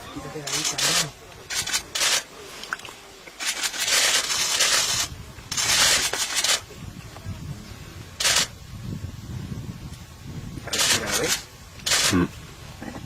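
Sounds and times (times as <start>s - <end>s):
rubbing rustling noise: 0.4s - 6.9s, 10.7s - 12.7s.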